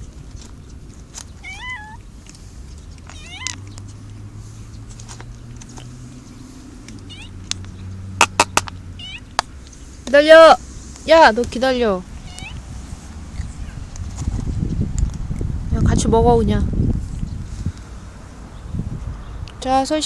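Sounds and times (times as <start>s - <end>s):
cats meowing: 1.4s - 2.1s, 2.9s - 3.8s, 7.0s - 7.5s, 8.9s - 9.4s, 12.1s - 12.7s.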